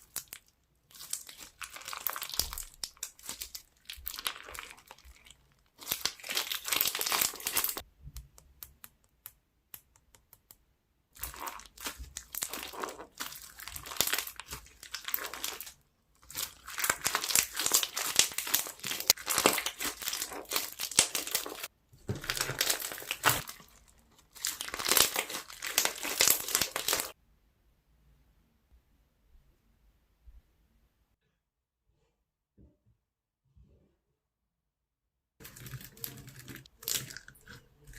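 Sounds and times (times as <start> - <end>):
slime crackling and popping: 0.0 - 7.8, 11.2 - 27.2.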